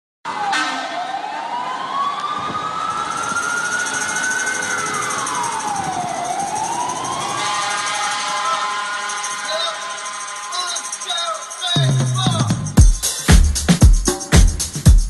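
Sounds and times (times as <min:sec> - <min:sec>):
siren wailing: 0:00.3 - 0:12.0.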